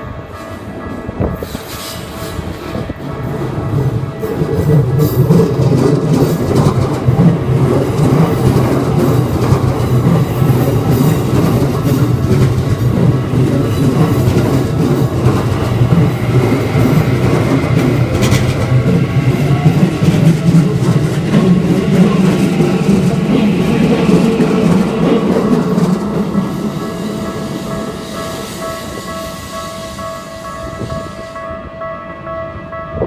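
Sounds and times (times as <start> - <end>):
train wheels rumbling on rails: 0.0 - 33.0.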